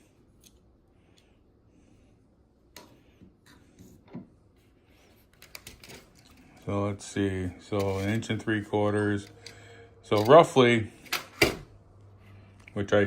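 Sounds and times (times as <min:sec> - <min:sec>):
tools and parts clicking: 0:09.2 - 0:11.4.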